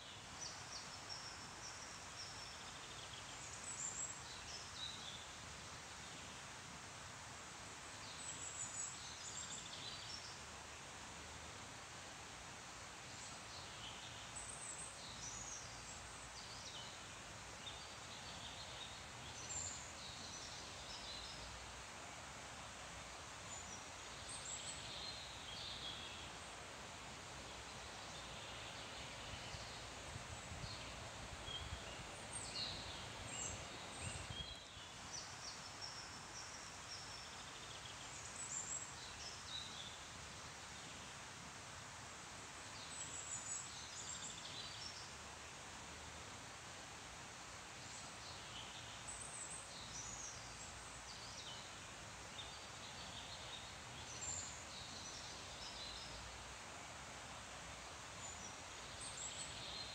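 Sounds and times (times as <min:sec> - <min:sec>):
leaves rustling in wind: 0:00.0 - 0:59.9.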